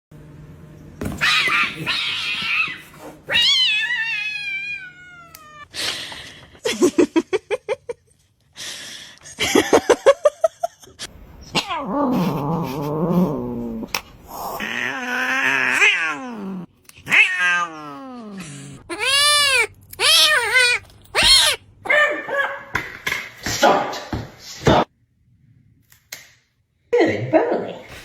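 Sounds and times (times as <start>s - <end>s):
cat yowling: 1.2s - 5.7s, 14.3s - 22.6s.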